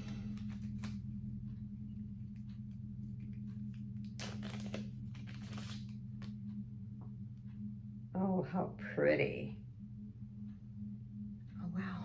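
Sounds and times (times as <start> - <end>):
low electrical hum: 0.0 - 12.0
crinkling rustles: 4.1 - 5.9.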